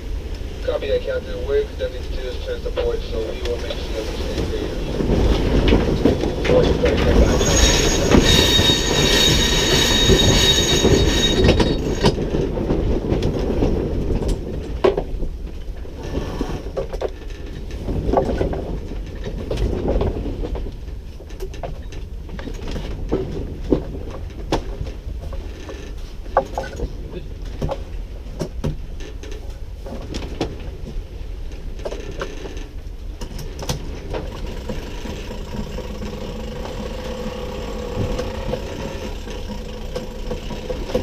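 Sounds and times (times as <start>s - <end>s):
low rushing noise: 0.0s - 10.2s
high steady whine: 0.0s - 12.2s, 34.1s - 41.0s.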